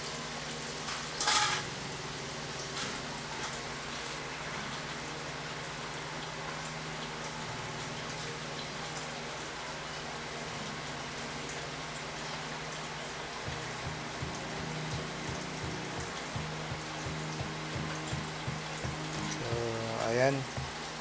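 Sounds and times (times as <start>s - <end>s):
steady hiss: 0.0s - 21.0s
low steady hum: 13.5s - 20.9s.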